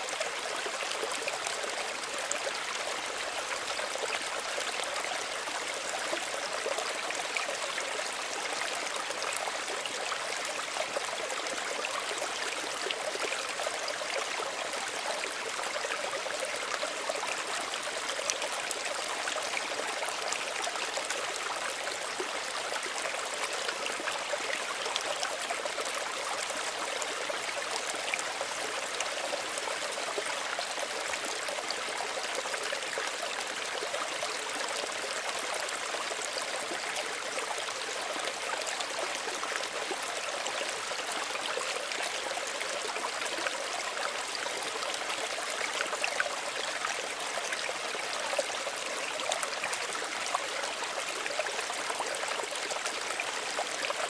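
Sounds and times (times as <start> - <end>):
stream running over stones: 0.0 - 54.0.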